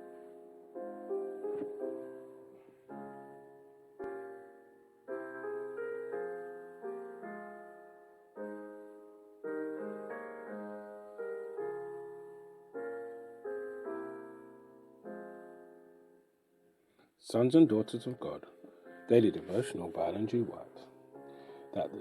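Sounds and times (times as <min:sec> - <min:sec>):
soft piano chords: 0:00.0 - 0:22.0.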